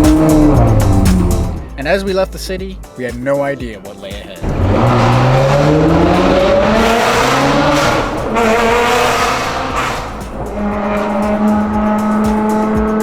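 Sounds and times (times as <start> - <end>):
sports car engine accelerating: 0.0 - 1.7, 4.4 - 13.0.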